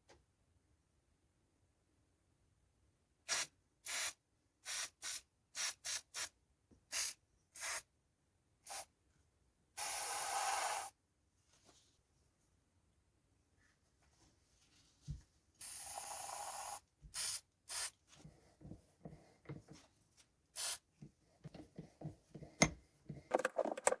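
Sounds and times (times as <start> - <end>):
pressurised spray hissing: 9.8 - 10.9, 15.6 - 17.9, 20.6 - 20.8.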